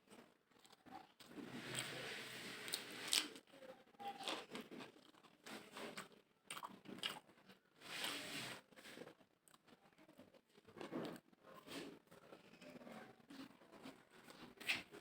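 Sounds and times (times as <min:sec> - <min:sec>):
person chewing: 0:04.2 - 0:08.3.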